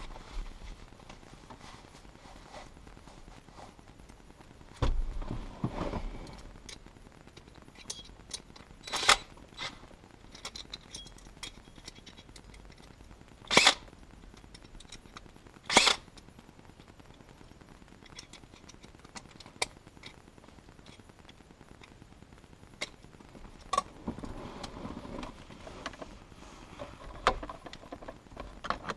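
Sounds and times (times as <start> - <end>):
dull thump: 4.8 - 6.0.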